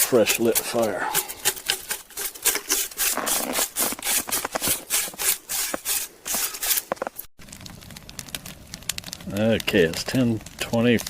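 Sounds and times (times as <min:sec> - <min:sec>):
bough brushing snow: 0:01.9 - 0:07.0.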